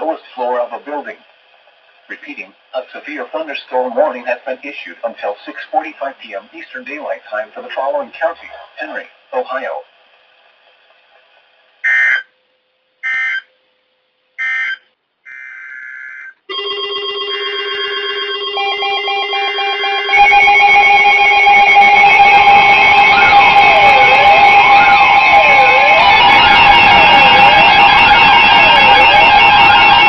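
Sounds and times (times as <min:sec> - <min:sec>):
layered steady beeping alarms: 0:11.8 - 0:12.3, 0:13.0 - 0:13.5, 0:14.4 - 0:30.0
screeching digital data bursts: 0:11.8 - 0:12.3, 0:13.0 - 0:13.5, 0:14.4 - 0:16.4
wailing siren-like tone: 0:11.8 - 0:12.3, 0:13.0 - 0:13.5, 0:14.4 - 0:30.0.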